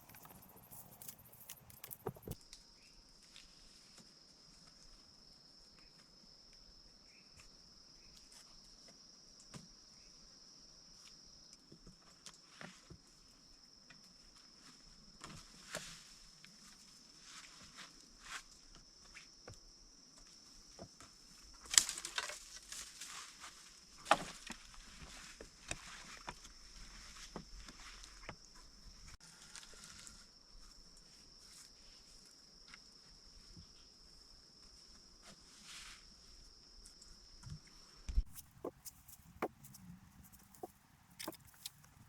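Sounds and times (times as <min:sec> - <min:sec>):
handling knocks and rustles: 0:00.0 - 0:02.4, 0:38.2 - 0:42.0
insects droning: 0:00.0 - 0:11.5, 0:24.6 - 0:42.0.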